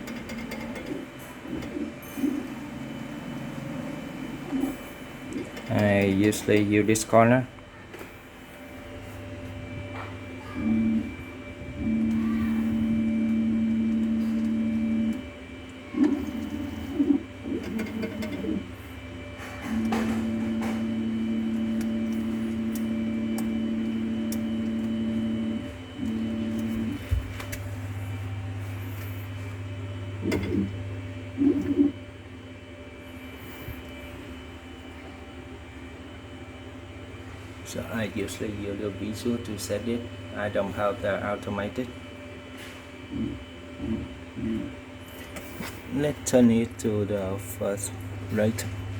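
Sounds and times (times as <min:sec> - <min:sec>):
steady machine hum: 0:00.0 - 0:48.9
stepper motor whine: 0:09.8 - 0:32.1.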